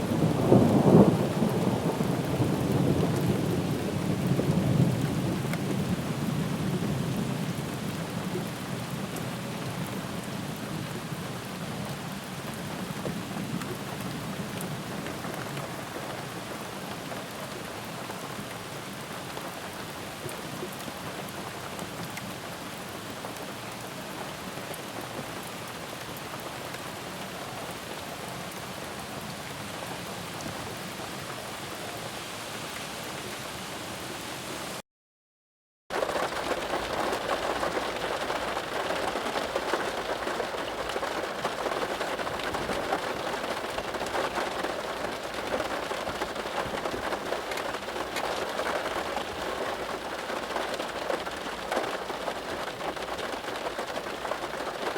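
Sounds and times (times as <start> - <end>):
thunder rumbling: 0.0 - 7.4, 35.9 - 54.9
steady rain falling: 0.0 - 34.8, 35.9 - 54.9.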